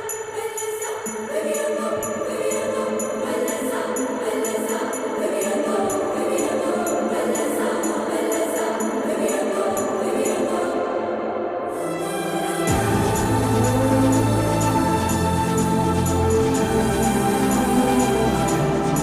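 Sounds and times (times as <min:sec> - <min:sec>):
jingling bells: 0:00.0 - 0:10.4, 0:12.7 - 0:19.0
held music tones: 0:12.6 - 0:19.0.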